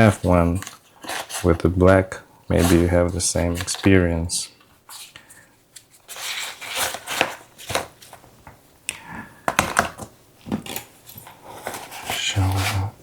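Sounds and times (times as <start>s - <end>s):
hard items clicking and knocking: 9.4s - 11.8s.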